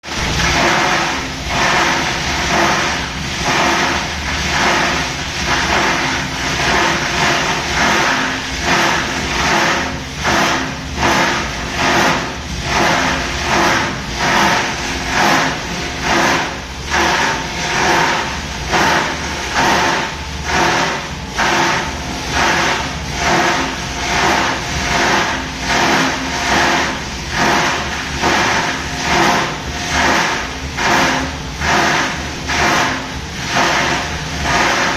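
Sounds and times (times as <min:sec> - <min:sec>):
grinder machine running: 0:00.0 - 0:34.9.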